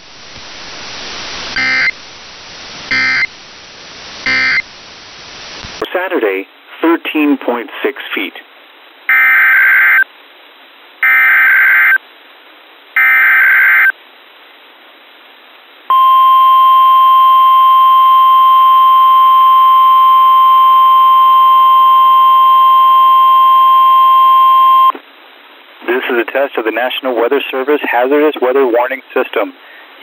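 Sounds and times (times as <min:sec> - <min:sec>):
steady warning alarm tone: 0:02.9 - 0:03.3, 0:04.3 - 0:04.6, 0:11.0 - 0:12.0.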